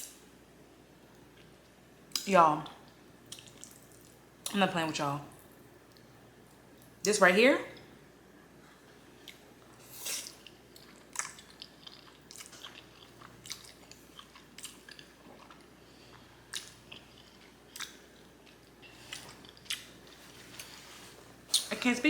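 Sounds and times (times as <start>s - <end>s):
person chewing with mouth smacks: 3.3s - 4.2s, 9.2s - 20.8s.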